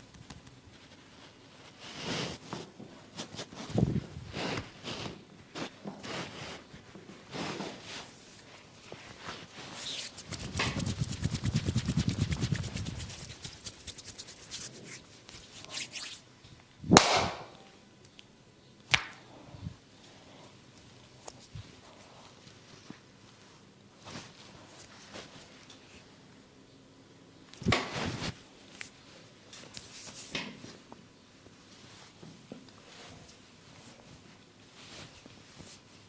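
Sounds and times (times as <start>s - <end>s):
hands slapping and rubbing skin: 9.8s - 16.2s, 18.9s - 19.2s
fast rhythmic tapping: 10.2s - 14.7s
loud sharp impact: 16.9s - 17.5s.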